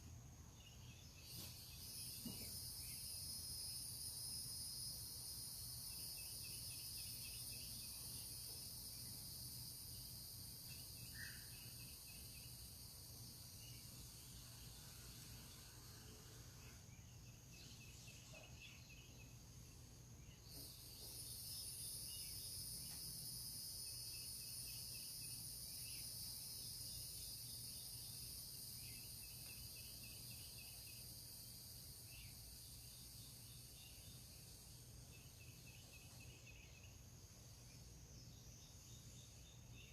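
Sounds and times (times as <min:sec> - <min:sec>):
low insect chirps: 0:00.0 - 0:39.9
insects shrilling: 0:01.2 - 0:19.4.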